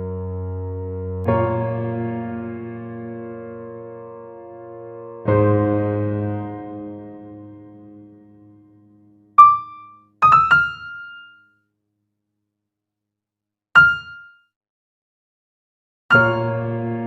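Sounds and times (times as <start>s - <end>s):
software keyboard notes: 9.4s - 11.4s.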